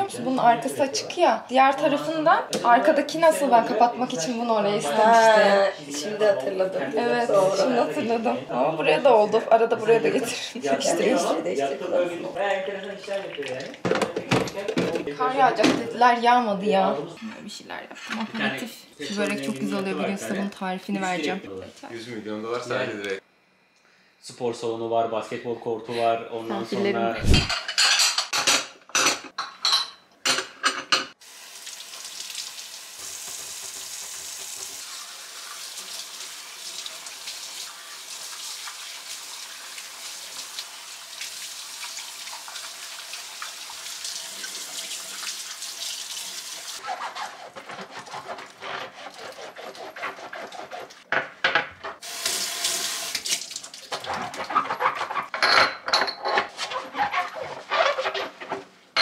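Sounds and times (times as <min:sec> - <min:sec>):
dishes and utensils clattering: 0:13.0 - 0:15.9, 0:27.2 - 0:31.2, 0:51.1 - 0:52.1, 0:53.9 - 0:59.0
tap running into sink: 0:13.3 - 0:15.0.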